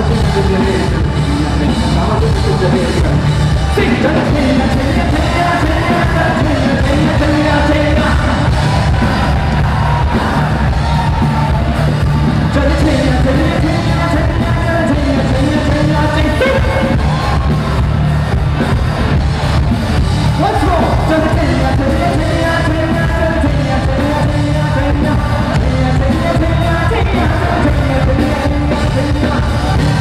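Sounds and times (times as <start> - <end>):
person singing live: 0.0 - 19.2, 20.3 - 30.0
bass-heavy backing track: 0.0 - 30.0
crowd shouting: 3.3 - 13.2, 16.2 - 22.0, 29.1 - 30.0.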